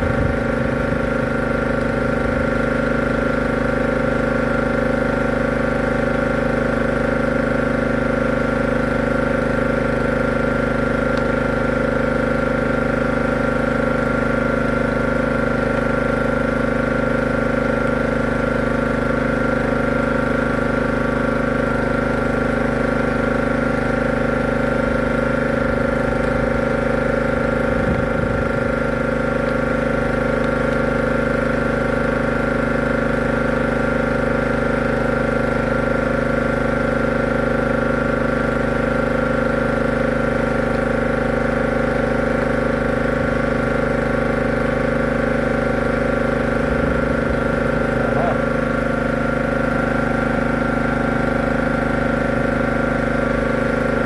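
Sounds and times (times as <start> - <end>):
machine humming: 42.9 - 51.4.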